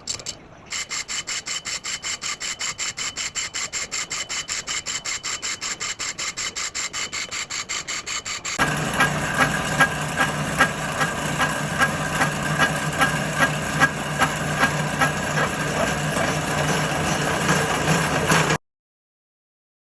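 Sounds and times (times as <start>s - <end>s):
regular ticking: 0.8s - 18.6s
machine motor humming: 8.6s - 18.6s.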